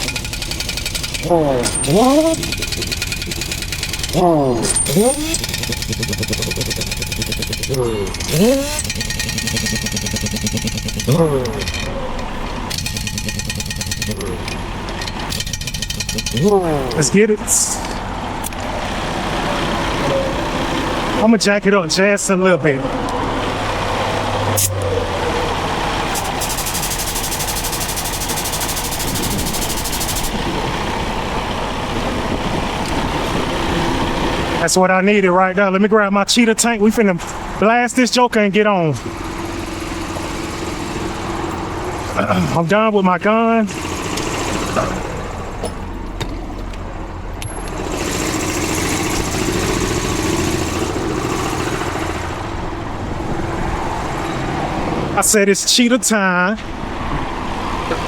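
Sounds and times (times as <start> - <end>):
jack ticking: 0.0 - 18.8, 24.5 - 34.8, 39.0 - 42.7, 43.6 - 53.2
diesel truck engine idling: 0.0 - 55.4
highway traffic noise: 0.0 - 58.0.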